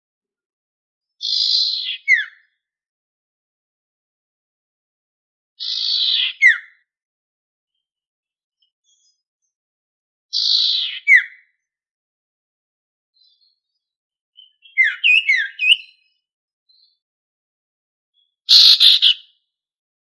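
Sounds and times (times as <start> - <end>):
sharp down-slurred bird chirps: 1.2 - 2.6, 13.2 - 17.0, 18.2 - 19.4
harsh rattling bird call: 18.5 - 19.2
songbird calling: 18.5 - 19.3.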